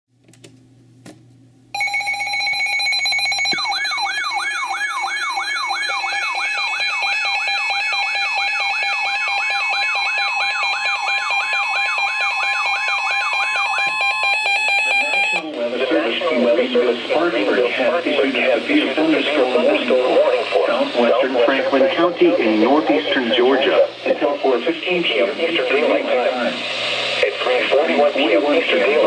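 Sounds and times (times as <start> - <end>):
rapid falling alarm sweep: 1.8 - 15.4
high-pitched electronic chord: 3.5 - 15.4.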